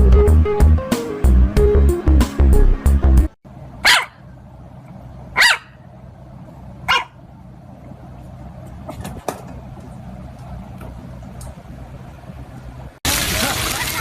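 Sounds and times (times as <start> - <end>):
puppy barking: 3.8 - 4.3, 5.4 - 5.8, 6.9 - 7.2.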